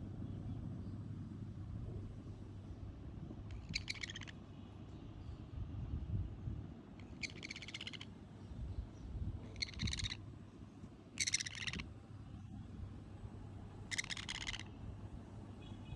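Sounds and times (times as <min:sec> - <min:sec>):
parrot harsh buzzy calls: 0:03.5 - 0:04.4, 0:07.0 - 0:08.1, 0:09.5 - 0:10.2, 0:11.2 - 0:11.9, 0:13.8 - 0:14.8.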